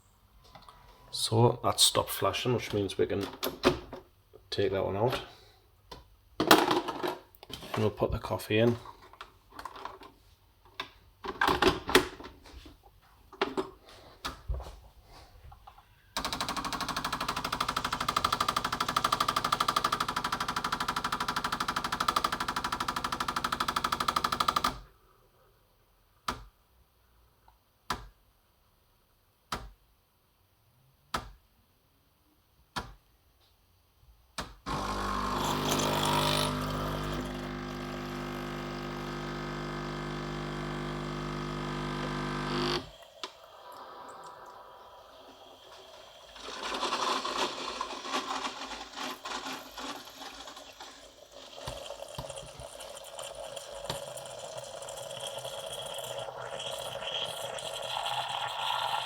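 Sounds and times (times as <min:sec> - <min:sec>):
coffee machine pump buzzing: 0:16.2 - 0:24.8, 0:34.7 - 0:59.0.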